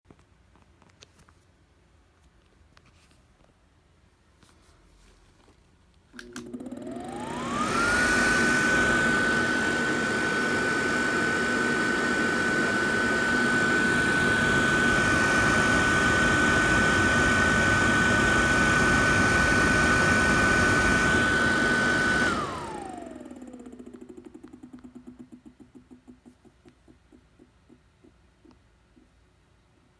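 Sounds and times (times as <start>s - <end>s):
blower fan whining: 6.1s - 28.5s
fan ticking while spinning down: 18.2s - 29.2s.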